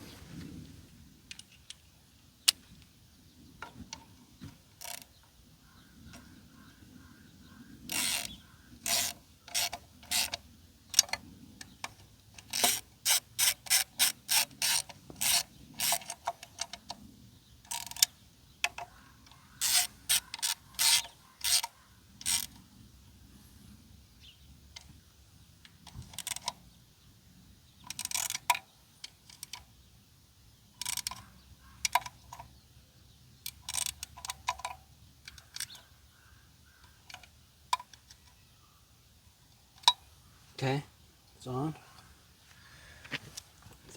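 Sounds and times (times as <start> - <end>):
socket ratchet clicking: 7.9 - 11.2, 11.9 - 17.0, 17.7 - 18.9, 19.6 - 22.6, 25.7 - 26.6, 27.8 - 29.7, 30.8 - 31.3, 33.4 - 35.9.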